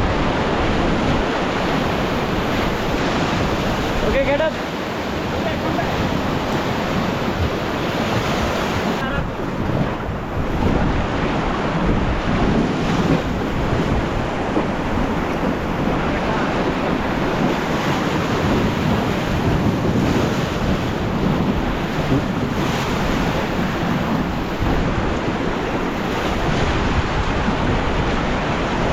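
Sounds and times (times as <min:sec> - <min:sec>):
river water rushing: 0:00.0 - 0:28.9
wind buffeting microphone: 0:00.0 - 0:28.9.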